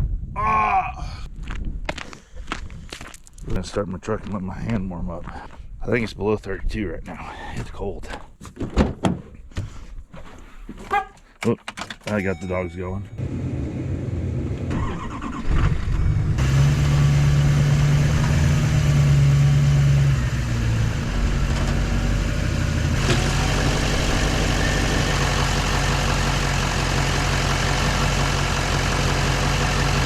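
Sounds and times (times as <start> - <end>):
truck engine starting and idling: 12.1 - 30.0.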